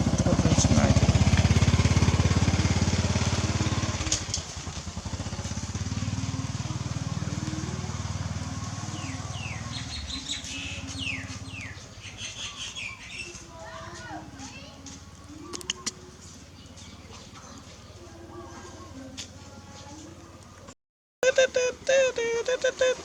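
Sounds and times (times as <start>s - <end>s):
small engine running: 0.0s - 12.3s
high falling chirps: 21.2s - 23.0s.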